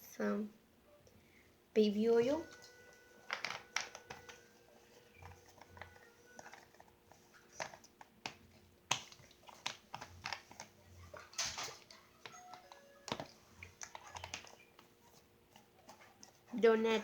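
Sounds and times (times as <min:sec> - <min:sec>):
faint steady hum: 0:00.0 - 0:17.0
small clicks and taps: 0:05.2 - 0:16.5.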